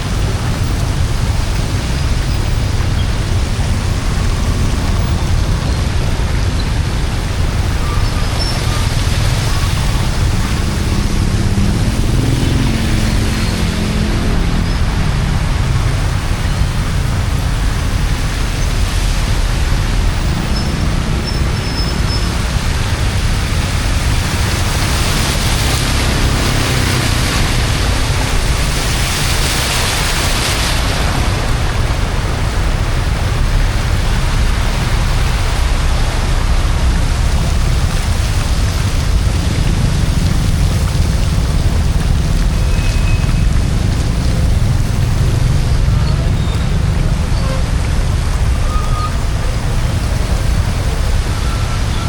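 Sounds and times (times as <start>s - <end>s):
rushing water with low rumble: 0.0s - 52.0s.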